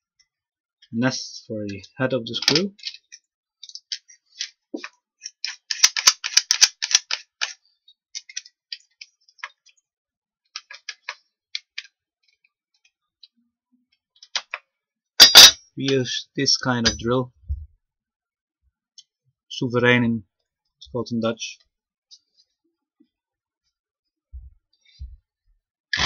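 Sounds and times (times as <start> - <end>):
tools clicking and tapping: 2.4 - 7.6, 10.6 - 11.9, 15.2 - 15.6.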